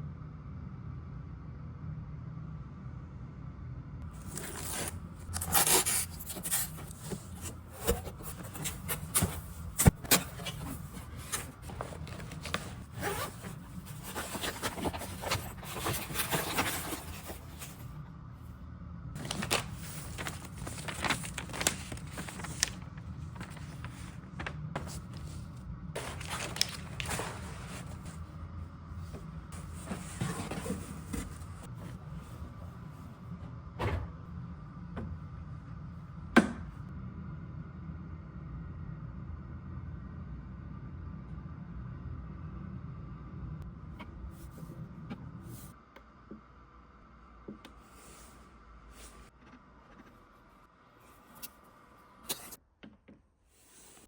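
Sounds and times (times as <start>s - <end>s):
low steady hum: 0.0s - 54.0s
scraping and rustling: 4.2s - 17.9s, 19.2s - 25.4s, 26.0s - 28.2s, 29.1s - 32.6s.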